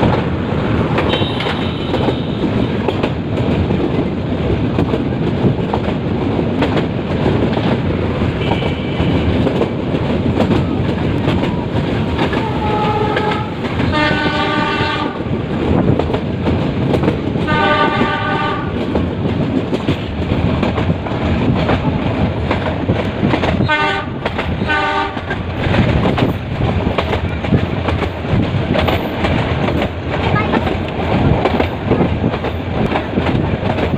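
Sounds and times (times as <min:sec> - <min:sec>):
train rail noise: 0:00.0 - 0:33.9
locomotive horn: 0:01.1 - 0:02.6, 0:08.4 - 0:09.5, 0:12.3 - 0:15.3, 0:17.4 - 0:18.8, 0:23.6 - 0:25.3.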